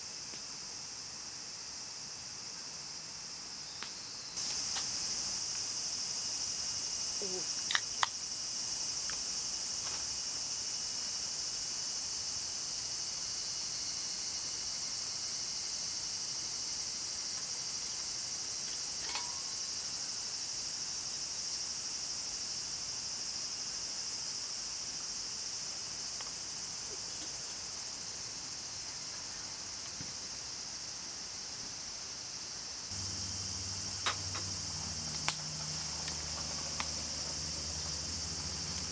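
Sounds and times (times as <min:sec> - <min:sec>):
insects singing: 0:03.6 - 0:11.0, 0:32.9 - 0:38.9
sharp clicks: 0:33.9 - 0:37.0.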